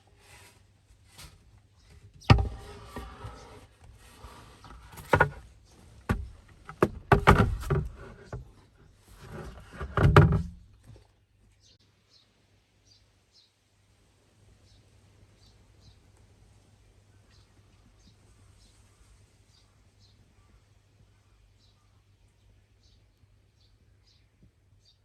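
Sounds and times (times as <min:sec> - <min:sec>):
rustling: 0:00.0 - 0:11.1
knocks and clunks of objects: 0:01.1 - 0:11.1.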